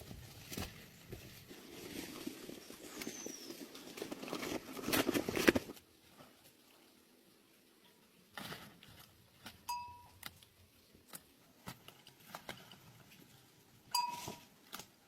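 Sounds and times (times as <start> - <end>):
leaves and stems rustling: 0.0 - 7.0.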